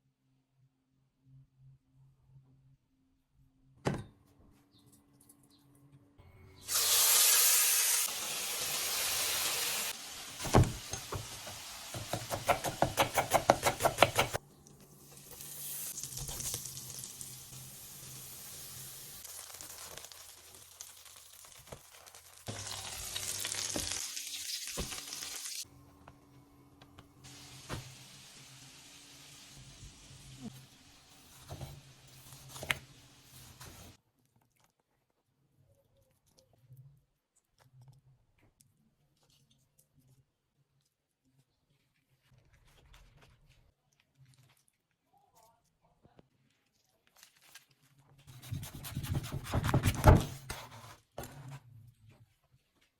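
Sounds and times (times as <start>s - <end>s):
food sizzling in frying pan: 6.7s - 12.6s, 15.0s - 25.6s, 27.2s - 30.4s.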